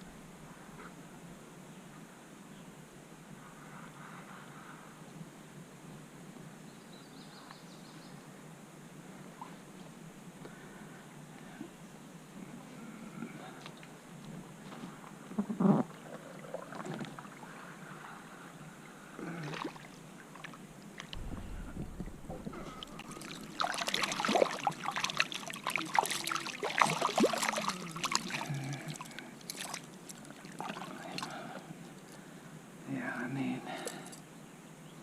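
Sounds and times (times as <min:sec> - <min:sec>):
water splashing in a creek: 0:15.8 - 0:17.8, 0:19.2 - 0:32.0
thump: 0:21.1 - 0:23.1.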